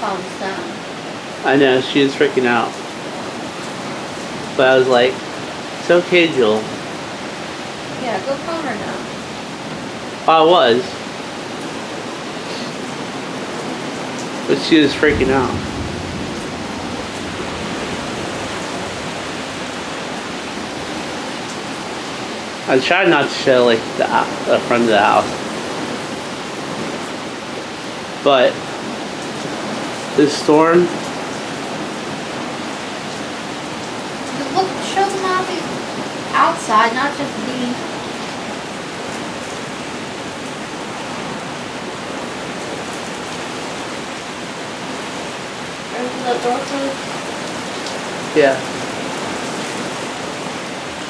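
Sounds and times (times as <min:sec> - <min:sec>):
heavy rain pouring: 0:00.0 - 0:51.0.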